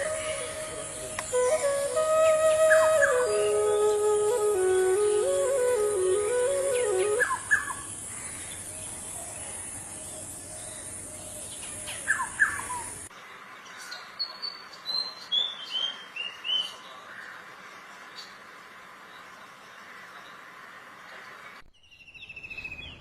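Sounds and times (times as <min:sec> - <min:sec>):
bird high whistled notes: 0:00.0 - 0:07.8
faint steady hiss: 0:00.0 - 0:23.0.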